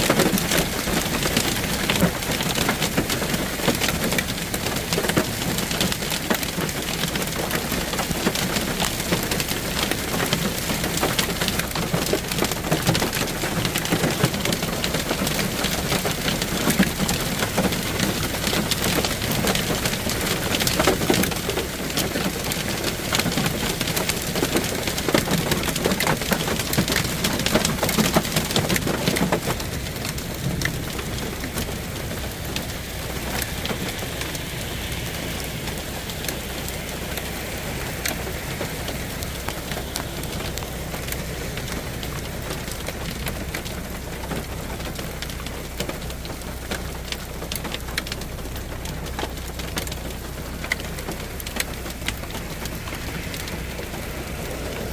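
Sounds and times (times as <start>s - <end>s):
rain on hard surfaces: 0.0s - 54.9s.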